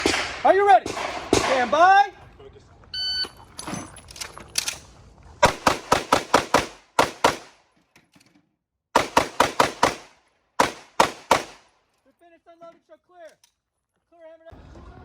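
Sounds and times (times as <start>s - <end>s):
pistol shots: 0.0s - 1.8s, 5.4s - 7.6s, 9.0s - 11.7s.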